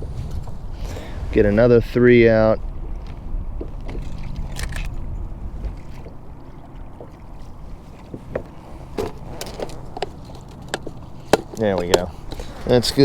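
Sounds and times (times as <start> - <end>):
low rumble and hum: 0.0 - 13.0
fishing tackle clicking and knocking: 8.3 - 12.8.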